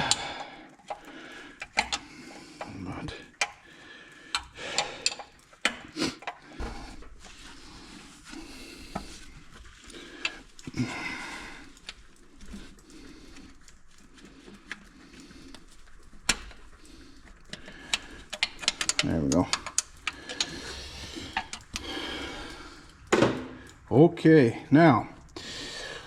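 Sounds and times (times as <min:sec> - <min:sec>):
wrench clinking on bolts: 0:18.3 - 0:20.5.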